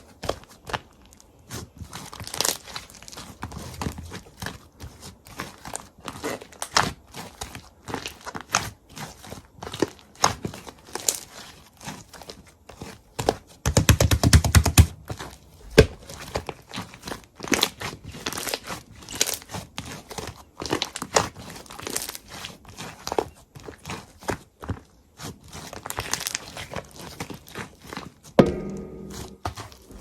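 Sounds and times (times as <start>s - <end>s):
crinkling and crackling: 0.0s - 13.6s, 15.0s - 30.0s
low thumps: 28.4s - 30.0s.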